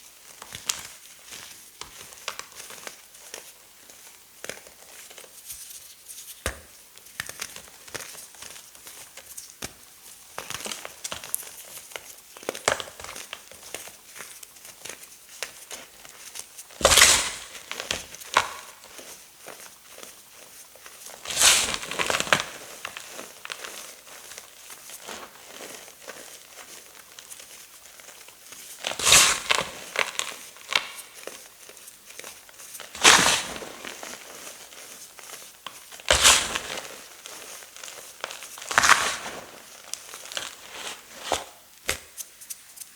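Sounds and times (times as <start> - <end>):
fine crumbly crackling: 10.0 - 41.6
chalk crunching: 14.2 - 42.9.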